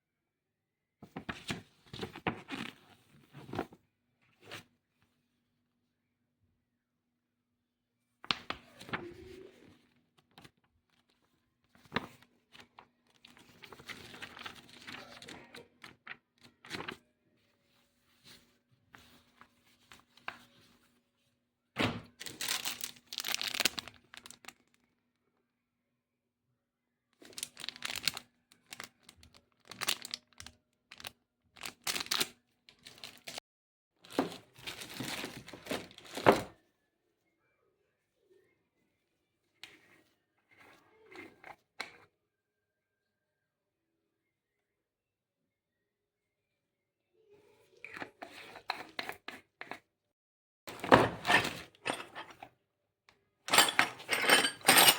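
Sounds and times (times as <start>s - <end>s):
plastic packaging crinkling and tearing: 22.2s - 24.7s, 27.3s - 33.4s.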